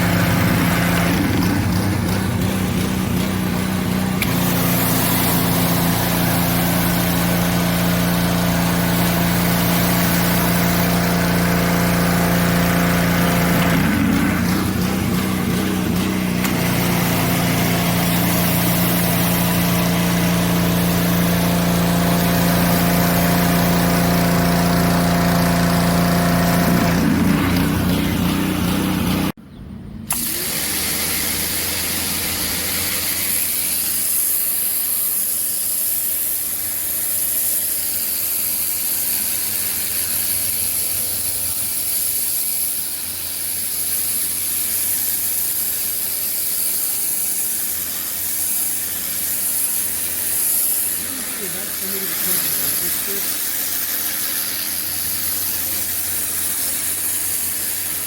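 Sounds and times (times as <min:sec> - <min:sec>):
high-pressure water spray hissing: 0:00.0 - 0:29.4, 0:30.1 - 0:58.0
pressure washer engine running: 0:00.0 - 0:29.4, 0:30.0 - 0:58.0.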